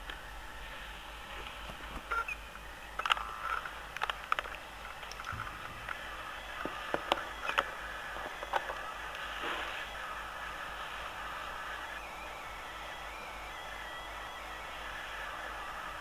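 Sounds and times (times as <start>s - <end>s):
steady hiss: 0.0s - 16.0s
sharp clicks: 3.0s - 6.0s.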